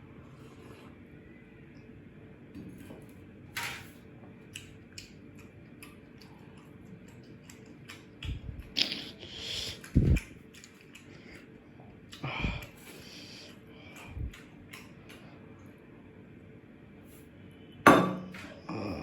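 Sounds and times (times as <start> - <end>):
chewing and slurping: 4.4 - 15.7.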